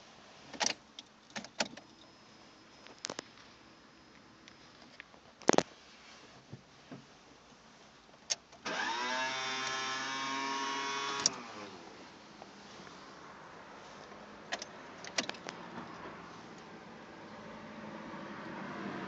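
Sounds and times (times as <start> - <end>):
car starter whine: 8.6 - 12.2.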